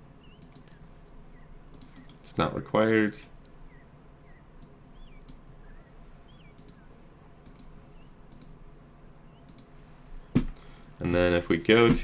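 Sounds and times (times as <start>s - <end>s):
computer mouse clicking: 0.3s - 0.8s, 1.7s - 2.2s, 4.6s - 5.4s, 6.4s - 8.6s, 9.4s - 9.7s.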